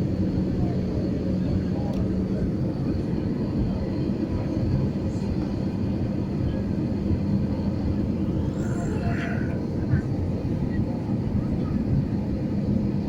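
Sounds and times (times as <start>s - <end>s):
airplane low rumble: 0.0s - 13.0s.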